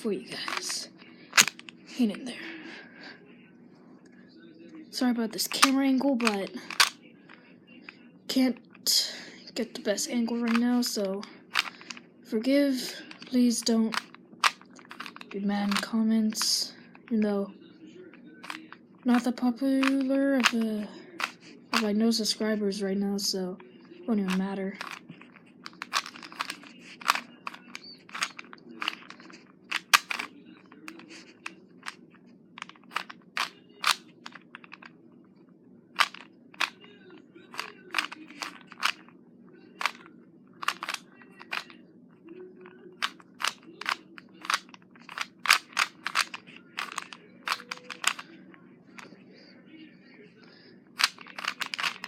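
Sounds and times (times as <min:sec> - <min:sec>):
puzzle cube layers clicking: 0:01.4 - 0:01.7, 0:05.5 - 0:07.0, 0:13.2 - 0:15.8, 0:24.3 - 0:30.3, 0:32.6 - 0:34.9, 0:36.0 - 0:36.8, 0:40.6 - 0:41.7, 0:43.0 - 0:48.2, 0:51.0 - 0:52.0.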